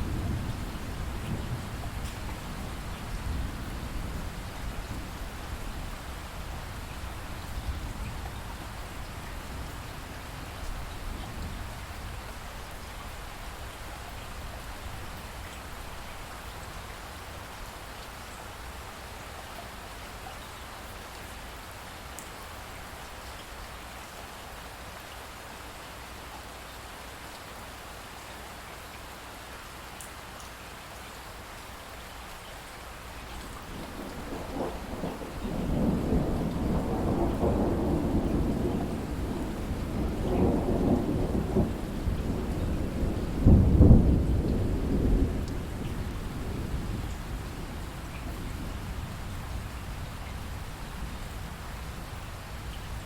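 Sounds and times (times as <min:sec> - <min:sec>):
low rumble of thunder: 0:00.0 - 0:13.7, 0:33.4 - 0:53.0
steady rain falling: 0:00.0 - 0:53.0.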